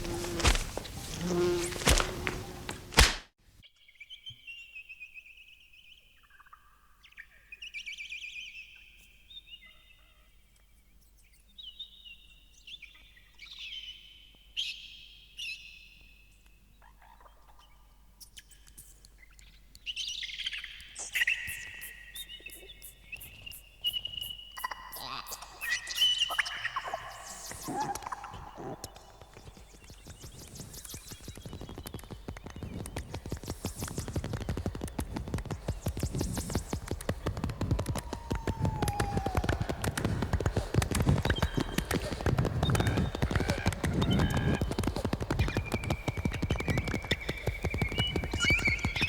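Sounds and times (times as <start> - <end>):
birds chirping and trilling: 19.2 - 37.3, 38.2 - 49.0.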